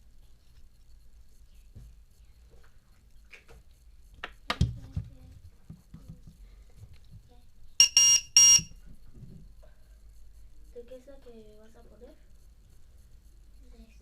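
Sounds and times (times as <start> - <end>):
high-pitched alarm beeps: 7.8 - 8.7.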